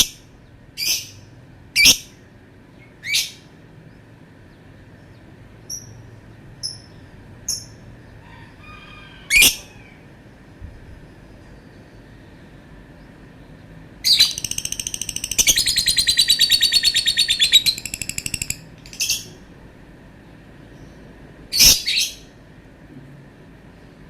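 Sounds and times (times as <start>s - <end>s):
bird calls: 11.0s - 19.4s
bird chattering high chirps: 14.0s - 19.4s.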